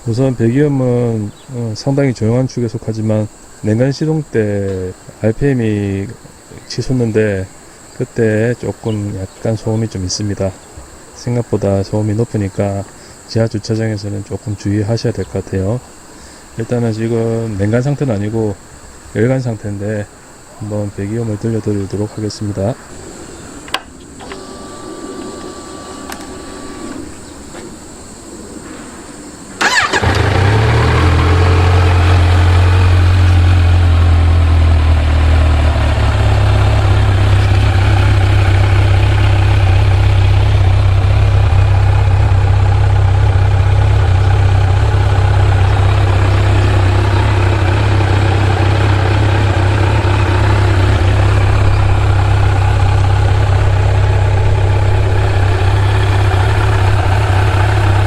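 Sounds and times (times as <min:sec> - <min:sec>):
motorcycle engine starting: 0:24.0 - 0:27.5, 0:29.6 - 0:58.0
motorcycle engine idling: 0:29.6 - 0:58.0.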